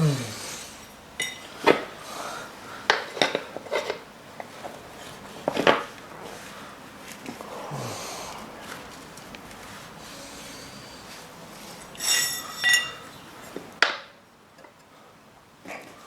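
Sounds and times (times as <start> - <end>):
metal tyre levers clanking on rim: 11.8 - 13.6.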